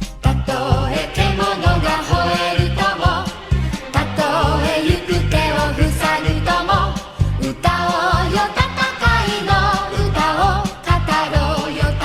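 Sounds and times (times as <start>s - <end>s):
pop music with bass beat: 0.0s - 12.0s
vocal melody: 0.0s - 12.0s.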